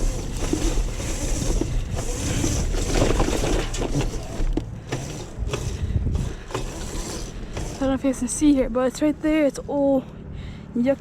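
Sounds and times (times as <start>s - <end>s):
handling knocks and rustles: 0.0s - 8.4s
wind rumbling on microphone: 5.0s - 9.4s.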